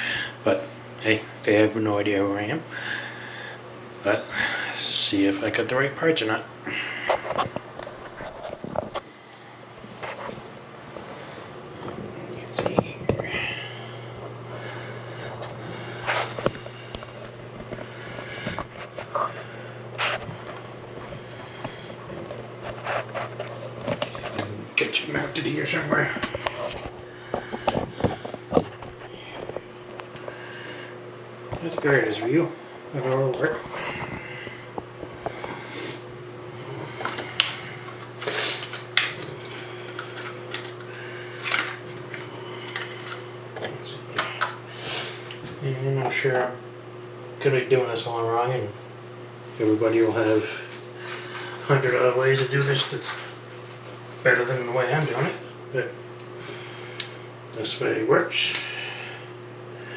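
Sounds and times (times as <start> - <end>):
steady low hum: 0.0 - 59.9
objects rustling and knocking: 7.1 - 9.1, 25.9 - 30.4.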